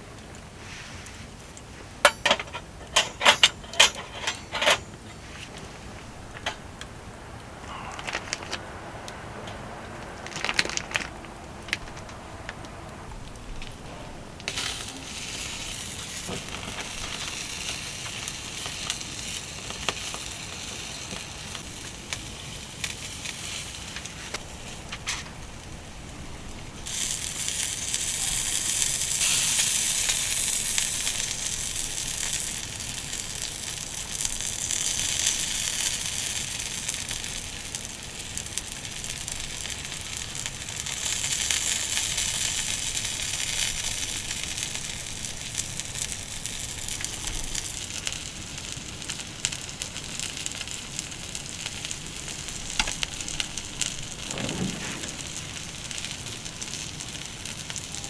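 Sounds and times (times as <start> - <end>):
wood fire crackling: 0.0 - 58.0
food sizzling: 14.4 - 58.0.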